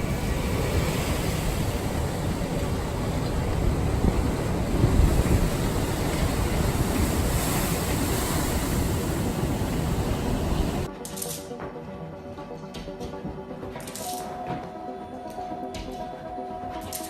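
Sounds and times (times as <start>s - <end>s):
loud rushing noise: 0.0s - 10.9s
faint music: 10.5s - 17.0s.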